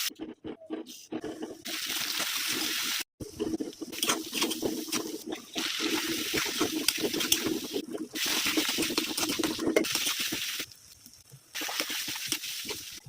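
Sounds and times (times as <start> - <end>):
liquid sizzling in a pan: 3.9 - 13.0.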